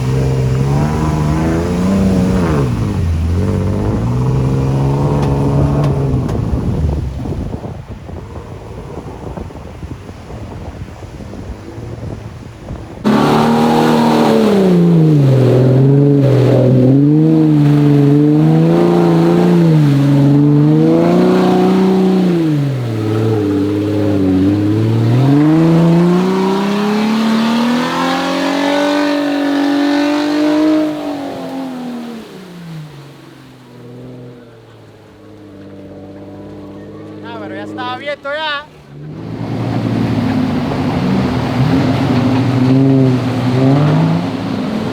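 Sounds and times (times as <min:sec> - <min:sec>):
engine revving hard: 0:00.0 - 0:06.9, 0:13.0 - 0:33.1, 0:38.8 - 0:44.9
low engine noise: 0:00.0 - 0:09.4, 0:12.8 - 0:44.9.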